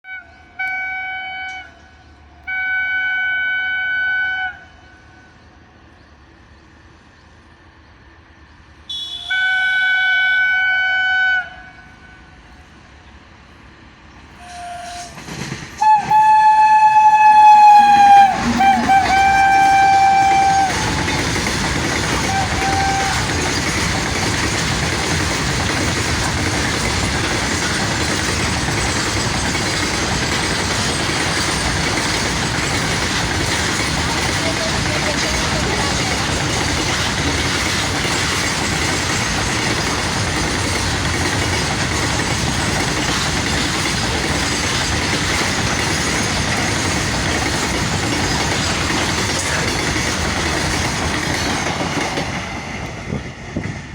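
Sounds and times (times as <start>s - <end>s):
train horn blasts: 0.0s - 5.3s, 8.9s - 12.6s, 14.4s - 15.2s, 15.8s - 21.4s, 22.1s - 23.6s
freight wagons rumbling and clattering: 15.4s - 53.4s.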